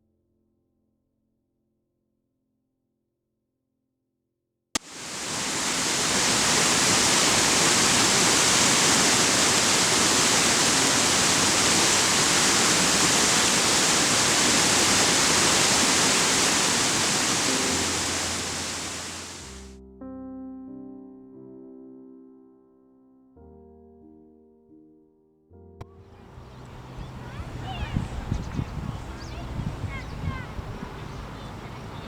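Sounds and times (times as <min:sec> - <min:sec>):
loud rushing hiss: 0:04.8 - 0:19.7
piano music: 0:11.0 - 0:11.2, 0:17.4 - 0:28.4.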